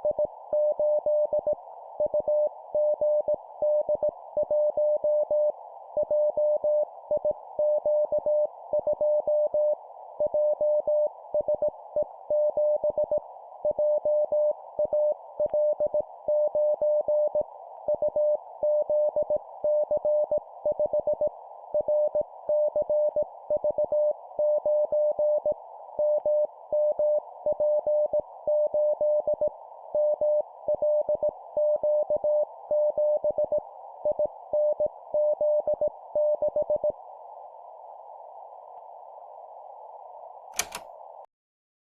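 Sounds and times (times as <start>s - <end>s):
short click: 40.6s - 40.9s.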